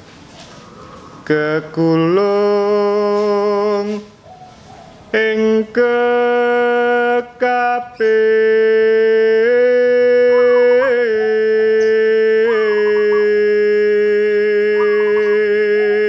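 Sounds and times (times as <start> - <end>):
dove cooing: 0.0 - 2.0, 4.1 - 5.2, 10.2 - 16.0
man singing long held note: 1.2 - 4.1, 5.1 - 16.0.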